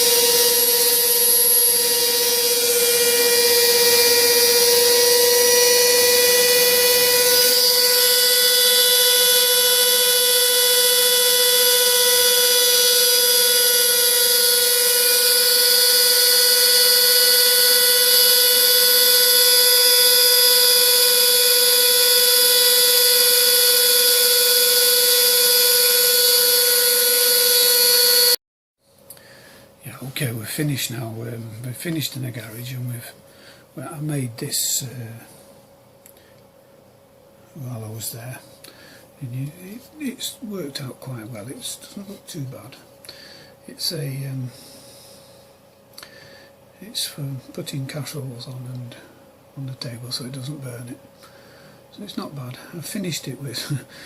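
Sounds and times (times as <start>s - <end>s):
router spindle whining carving wood: 0.0s - 28.4s.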